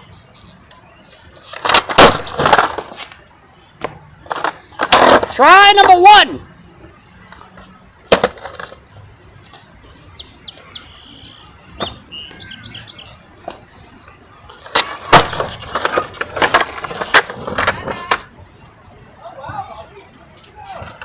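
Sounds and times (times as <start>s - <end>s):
birds chirping: 9.8s - 14.5s
skateboard clacking and rattling: 14.6s - 18.3s.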